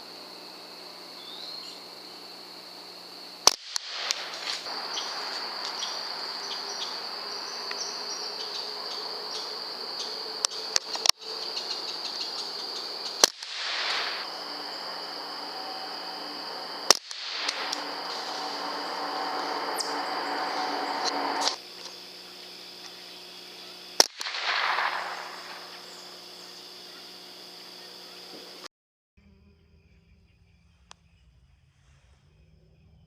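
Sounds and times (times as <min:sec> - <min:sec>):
insect trill: 0:00.0 - 0:31.4
rifle shots cracking: 0:03.4 - 0:07.0, 0:13.1 - 0:14.3, 0:16.8 - 0:19.2, 0:24.0 - 0:26.0
small clicks: 0:10.4 - 0:11.2.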